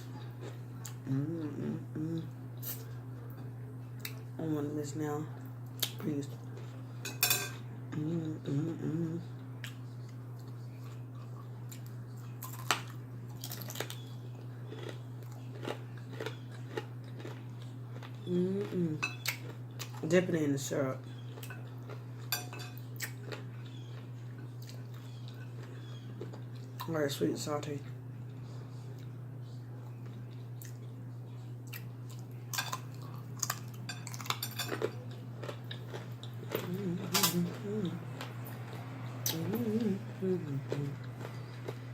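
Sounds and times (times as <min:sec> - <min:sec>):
chewing and crunching bacon: 0:00.0 - 0:04.4, 0:05.3 - 0:41.9
steady low hum: 0:00.0 - 0:41.9
cutlery clinking on a plate: 0:07.0 - 0:07.6, 0:22.3 - 0:22.8.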